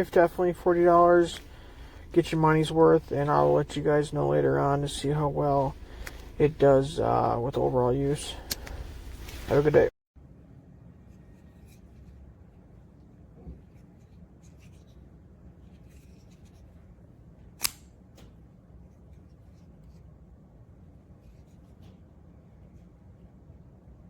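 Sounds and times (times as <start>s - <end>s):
low steady hum: 0.0s - 14.4s
sharp click: 17.6s - 17.9s.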